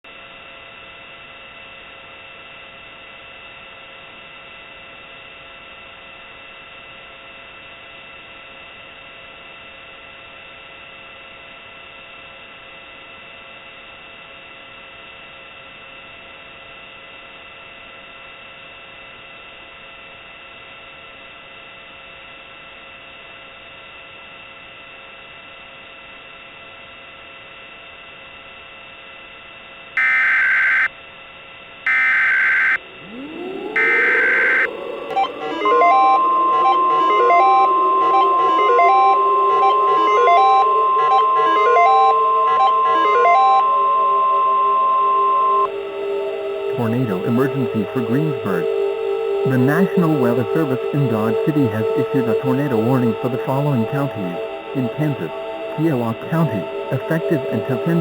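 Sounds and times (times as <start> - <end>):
faint steady humming tones: 0.1 - 58.0
radio static hiss: 30.0 - 30.9, 31.9 - 58.0.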